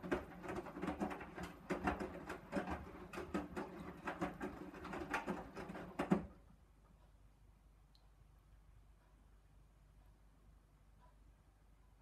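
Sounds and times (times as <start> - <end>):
washing machine drum tumbling: 0.0 - 6.4.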